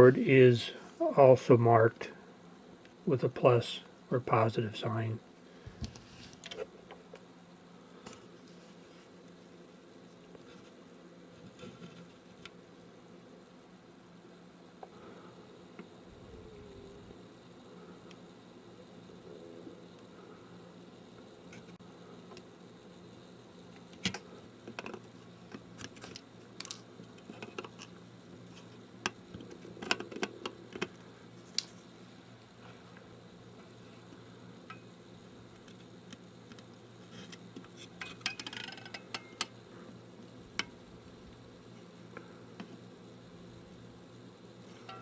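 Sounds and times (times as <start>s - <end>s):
low steady hum: 0.0s - 45.0s
small tools clicking and tapping: 23.8s - 28.0s, 35.6s - 39.6s.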